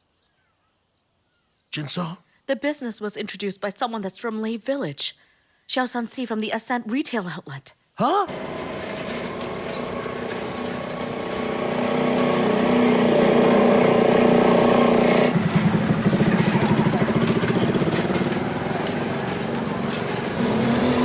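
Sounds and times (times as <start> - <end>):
vehicle engine chugging: 8.3 - 21.0.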